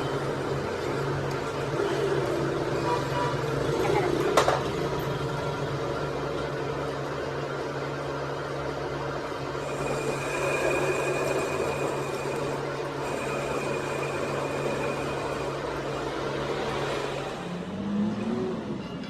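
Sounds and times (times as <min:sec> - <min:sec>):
high steady whine: 0:04.8 - 0:17.6
electric motor humming: 0:09.6 - 0:16.9.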